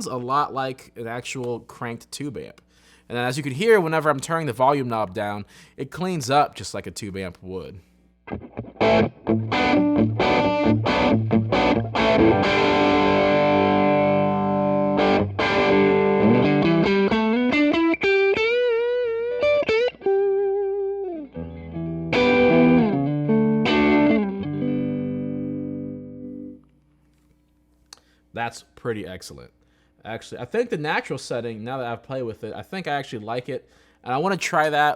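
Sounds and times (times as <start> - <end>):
distorted electric guitar: 8.3 - 26.6.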